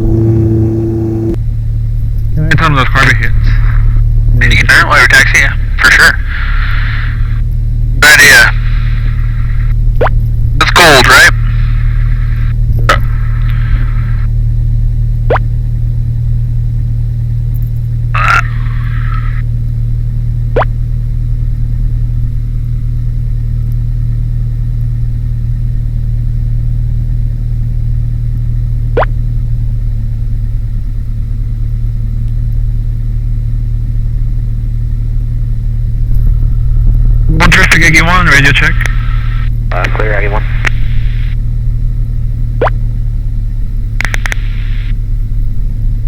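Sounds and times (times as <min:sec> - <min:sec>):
aircraft engine and propeller drone: 0:00.0 - 0:46.0
short clicks: 0:44.0 - 0:44.6.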